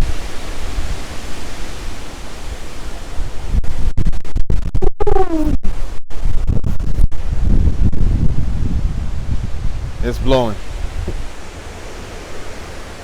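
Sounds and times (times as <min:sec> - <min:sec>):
strong wind rushing through trees: 0:00.0 - 0:04.0, 0:04.7 - 0:13.0
wind buffeting microphone: 0:00.0 - 0:13.0
short falling tone: 0:04.8 - 0:05.6.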